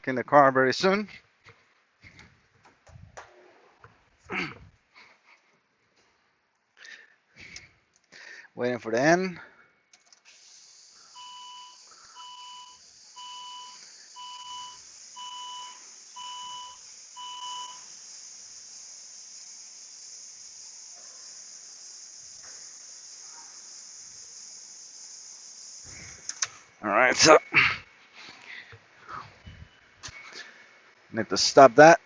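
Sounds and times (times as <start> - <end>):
steady high hiss: 10.0 - 32.0
two-tone electronic beeps: 11.2 - 17.8.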